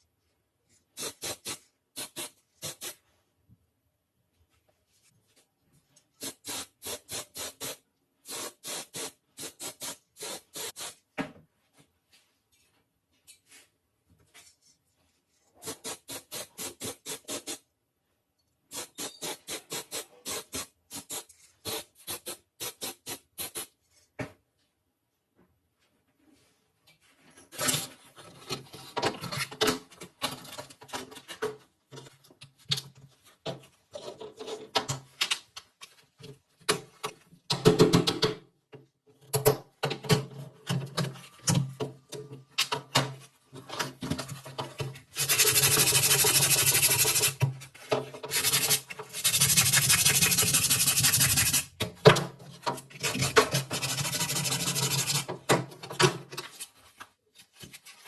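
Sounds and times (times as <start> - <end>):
sanding noise: 45.2 - 47.4, 48.3 - 51.7, 53.8 - 55.2
rubbing and scraping strokes: 45.2 - 51.8, 52.9 - 55.3.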